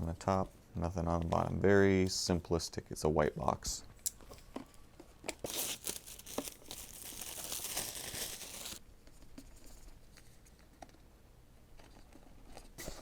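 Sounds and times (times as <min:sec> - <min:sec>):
plastic wrapping crinkling: 0:05.2 - 0:08.8.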